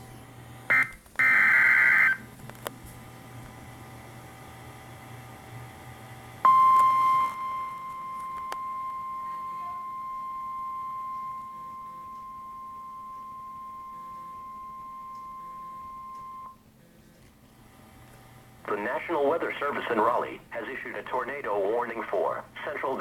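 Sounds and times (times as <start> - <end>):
high-pitched alarm tone: 0.7 - 2.2, 6.5 - 16.6.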